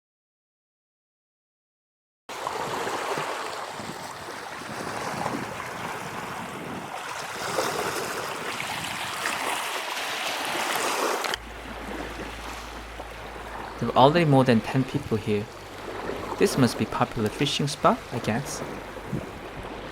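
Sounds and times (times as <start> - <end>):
surf washing against rocks: 2.3 - 19.9
wind on microphone: 2.5 - 9.7, 14.8 - 19.9.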